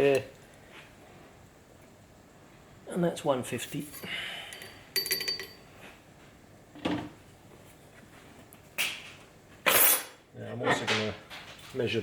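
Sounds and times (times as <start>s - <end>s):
metal clink: 3.8s - 5.7s
tools clattering: 3.8s - 5.7s.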